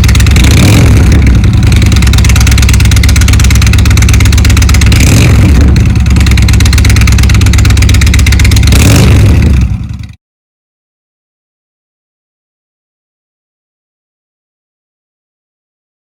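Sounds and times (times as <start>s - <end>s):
motorcycle engine revving: 0.0s - 10.2s.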